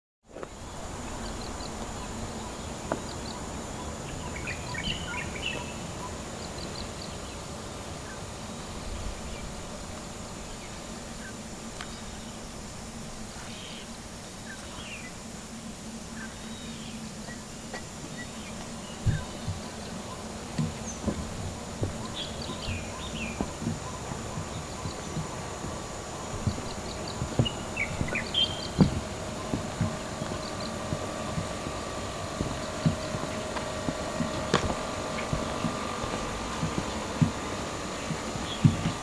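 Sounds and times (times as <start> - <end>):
background hiss: 0.3 - 39.0
bird chirps: 1.0 - 8.2, 16.1 - 39.0
knocks: 19.0 - 39.0.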